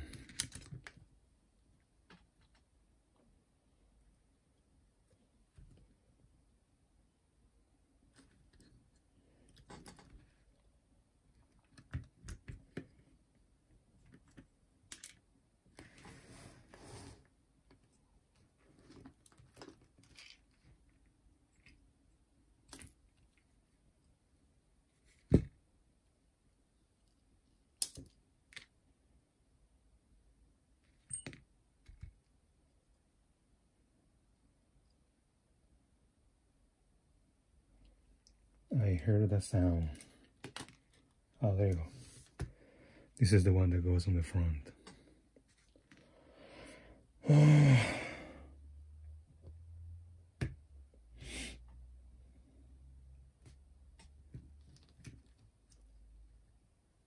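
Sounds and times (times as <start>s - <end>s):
small plastic parts clicking: 0.0s - 1.0s, 14.0s - 15.3s, 27.8s - 28.7s
man sighing: 47.2s - 48.6s.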